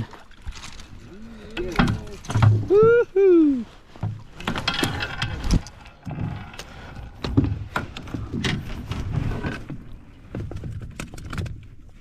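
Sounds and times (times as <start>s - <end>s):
fish flopping in metal boat: 0.0s - 3.0s, 3.8s - 12.0s
fishing gear knocking and rattling: 4.0s - 11.7s.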